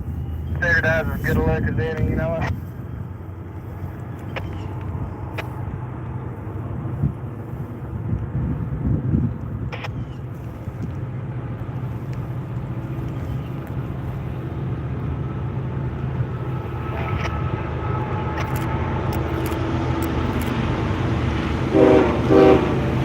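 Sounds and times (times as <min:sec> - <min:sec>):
diesel locomotive engines droning: 0:00.0 - 0:23.0
sharp clicks: 0:04.0 - 0:05.6, 0:09.7 - 0:11.0, 0:18.3 - 0:20.8.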